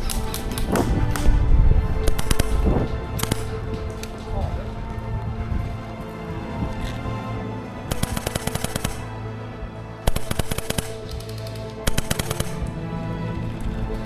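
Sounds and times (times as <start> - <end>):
airsoft gun firing bursts: 2.0 - 2.6, 3.2 - 3.5, 7.9 - 9.1, 10.1 - 12.7.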